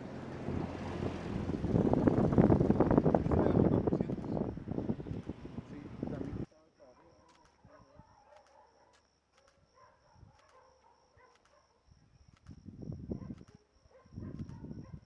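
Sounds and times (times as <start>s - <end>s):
deep rumbles: 0.0s - 6.5s
paired clicks: 12.3s - 12.6s, 14.4s - 14.6s.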